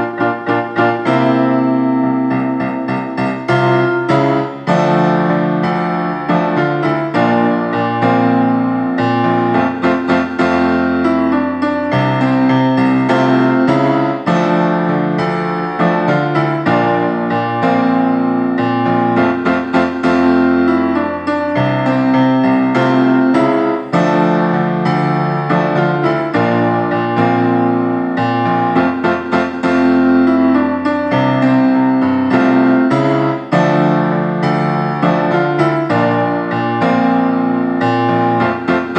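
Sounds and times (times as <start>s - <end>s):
piano keyboard playing chords: 0.0s - 38.9s.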